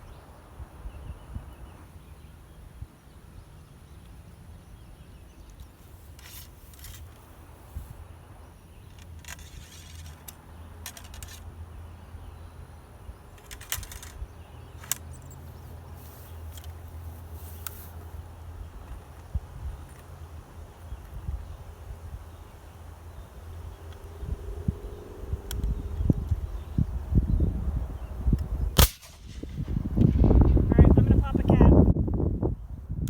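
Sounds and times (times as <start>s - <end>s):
rifle metallic clicks and rattles: 5.4s - 7.3s, 8.8s - 11.5s, 13.3s - 15.4s, 16.4s - 16.9s.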